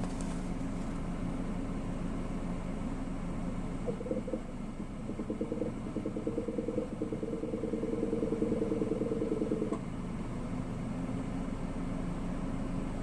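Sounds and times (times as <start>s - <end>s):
low steady hum: 0.0s - 13.0s
fast pulsing buzz: 5.2s - 9.8s.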